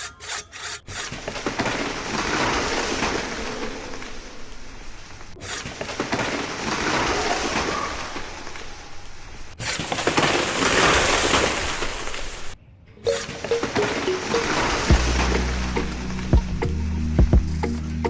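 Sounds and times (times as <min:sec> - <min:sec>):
saw cutting through wood: 0:00.0 - 0:01.2.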